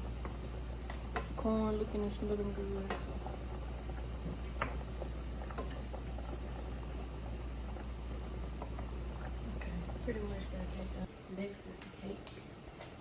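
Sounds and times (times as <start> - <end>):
food bubbling in a pot: 0.0 - 11.1
small pops and ticks: 0.2 - 1.5, 2.8 - 10.0.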